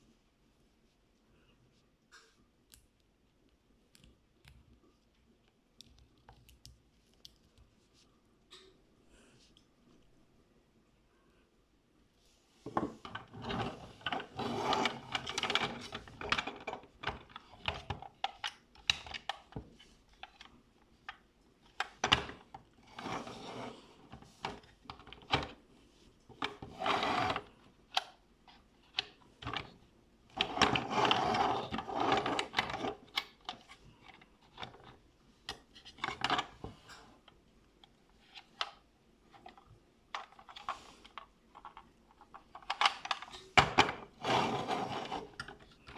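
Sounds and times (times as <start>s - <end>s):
plastic toy scraping and rattling: 12.8s - 20.5s, 21.7s - 25.6s, 26.3s - 27.7s, 28.5s - 35.0s, 40.2s - 45.9s
plastic parts clicking: 39.4s - 44.1s.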